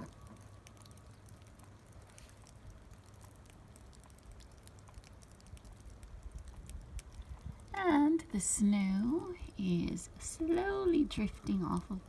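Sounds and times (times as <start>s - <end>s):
faint ticks: 0.0s - 7.8s
wind rumble on microphone: 5.4s - 12.0s.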